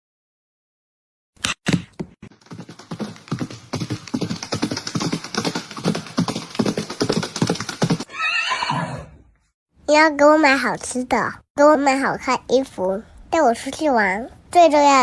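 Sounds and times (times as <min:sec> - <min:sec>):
knocks and clatter: 0:02.2 - 0:08.1.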